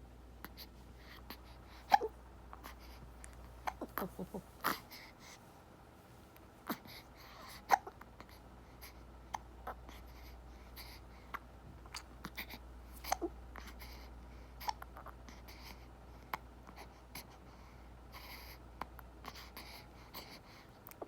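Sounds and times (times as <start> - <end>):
baby hiccuping: 1.9 - 2.8, 3.6 - 4.9.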